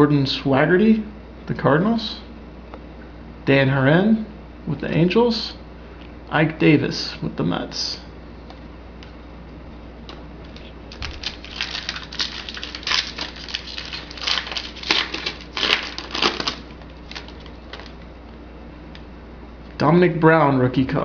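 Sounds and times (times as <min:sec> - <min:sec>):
foil wrapper tearing and crinkling: 0:10.6 - 0:18.0.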